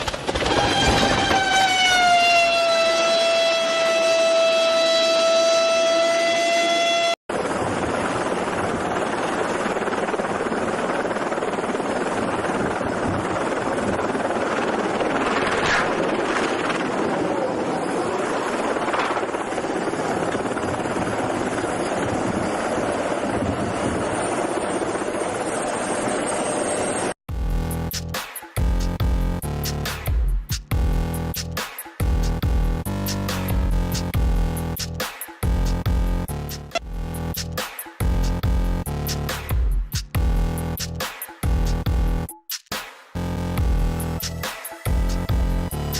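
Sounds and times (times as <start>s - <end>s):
helicopter in flight: 0.0s - 27.2s
siren-like tone: 0.4s - 7.2s, 15.7s - 19.2s
music: 27.3s - 45.9s.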